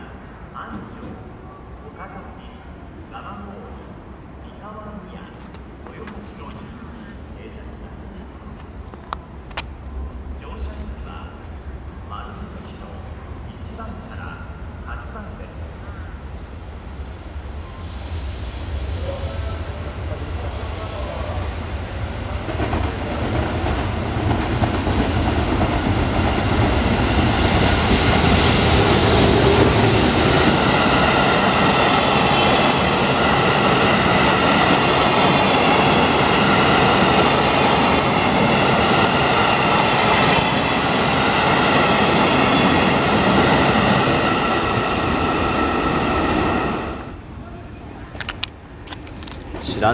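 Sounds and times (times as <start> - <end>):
steady high ringing: 17.0 - 20.5
train wheels clattering on rails: 20.6 - 47.4.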